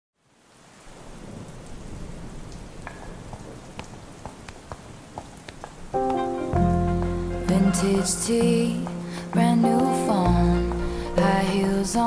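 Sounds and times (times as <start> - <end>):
rain falling: 0.2 - 12.0
water drops hitting a surface: 2.8 - 5.8.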